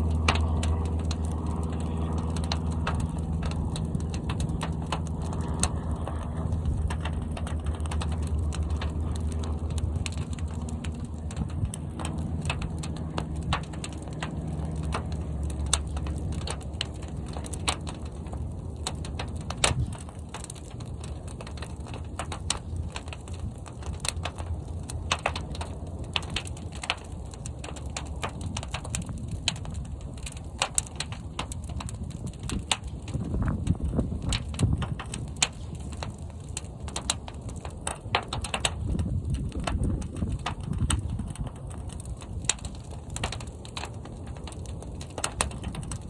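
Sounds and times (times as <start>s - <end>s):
fire crackling and popping: 0.0s - 46.0s
roar of flames: 0.0s - 46.0s.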